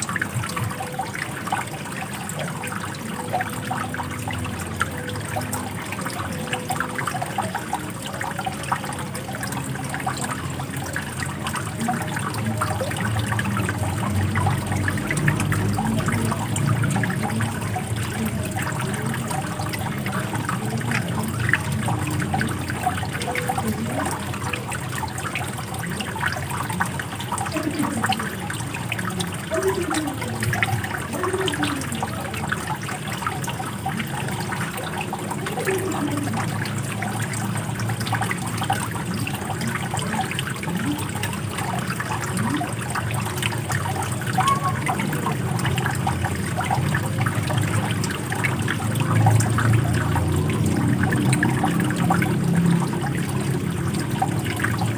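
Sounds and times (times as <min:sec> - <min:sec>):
water trickling and gurgling: 0:00.0 - 0:54.9.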